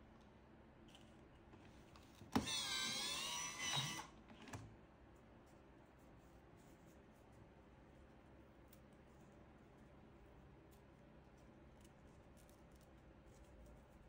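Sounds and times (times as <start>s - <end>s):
small motor whine: 2.3s - 4.2s.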